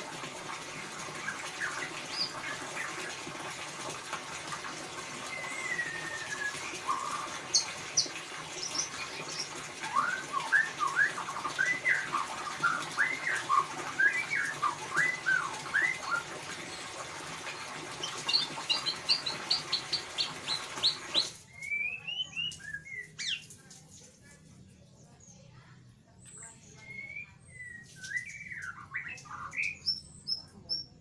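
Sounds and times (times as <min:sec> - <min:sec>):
bird singing whistled notes: 0:05.3 - 0:07.7, 0:08.6 - 0:16.2, 0:18.3 - 0:23.5, 0:26.3 - 0:31.0.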